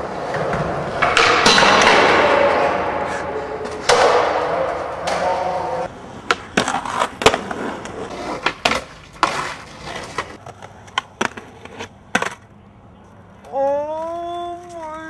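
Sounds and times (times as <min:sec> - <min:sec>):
skateboard wheels rolling and scraping: 0:00.0 - 0:15.0
skateboard clacks and pops: 0:06.2 - 0:15.0
person shouting: 0:13.5 - 0:15.0.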